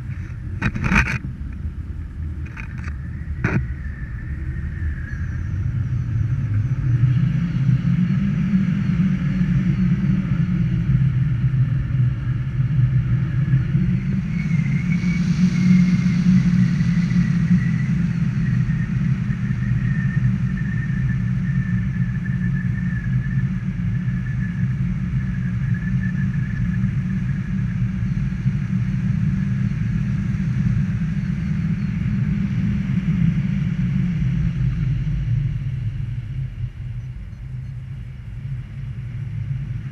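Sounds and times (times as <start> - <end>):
motor running with high whine: 0.0 - 39.9.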